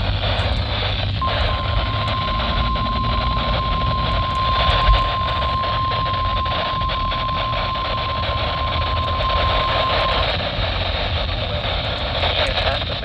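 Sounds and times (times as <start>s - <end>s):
steady warning alarm tone: 0.0s - 10.4s
low rumble: 0.0s - 11.0s
radio hiss: 0.0s - 13.0s.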